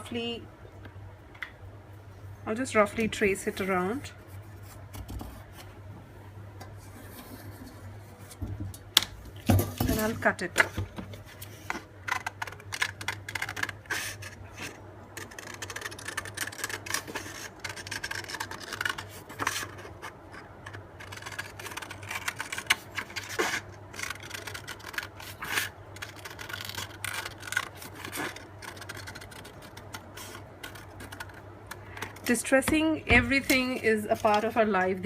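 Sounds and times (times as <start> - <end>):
paper rustling and scraping: 11.1 - 32.5, 33.2 - 35.0
scissors snipping paper: 12.0 - 14.2, 15.2 - 19.9, 20.7 - 32.4.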